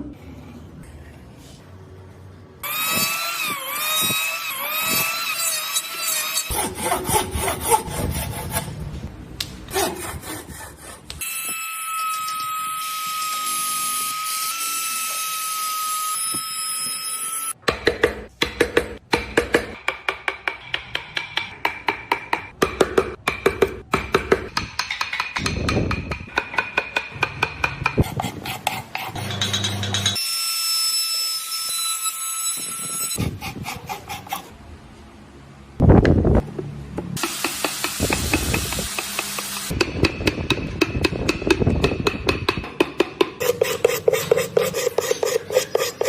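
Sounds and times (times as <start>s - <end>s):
hand tool strokes on wood: 43.4s - 46.0s.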